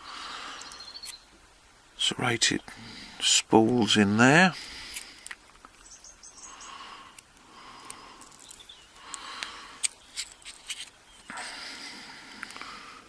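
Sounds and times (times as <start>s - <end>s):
faint scratching and rustling: 9.8s - 11.6s.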